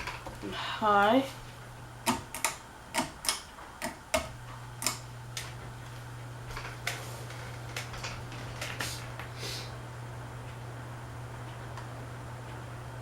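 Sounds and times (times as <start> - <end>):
ceiling fan motor humming: 0.0 - 13.0
fan switch clicks: 2.0 - 5.5.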